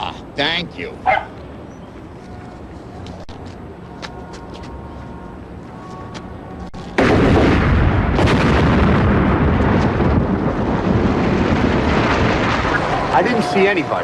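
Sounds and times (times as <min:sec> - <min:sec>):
large explosion rumbling: 0:07.0 - 0:14.0.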